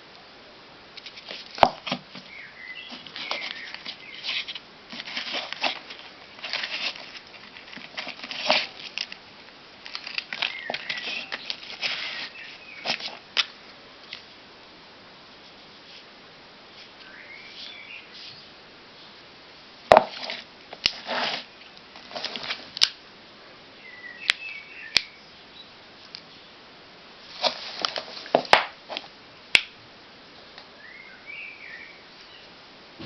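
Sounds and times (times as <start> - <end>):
packaging rustling and scraping: 1.0 - 9.2, 9.8 - 13.2, 19.9 - 22.7, 27.3 - 29.1.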